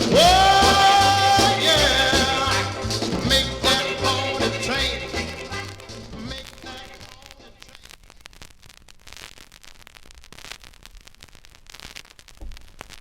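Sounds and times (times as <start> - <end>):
cha-cha dance music: 0.0 - 7.6
vinyl record crackle: 0.0 - 13.0.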